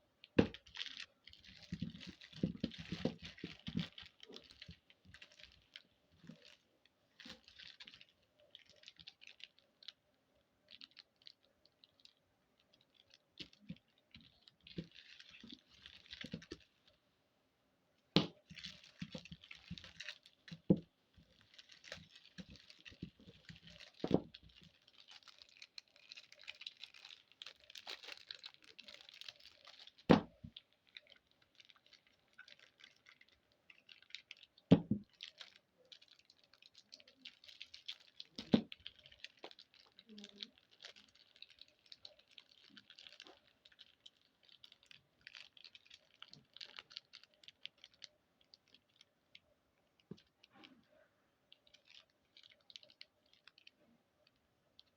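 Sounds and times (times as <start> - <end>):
plastic wrappers crinkling: 0.2 - 17.0, 18.1 - 50.9, 51.5 - 54.9.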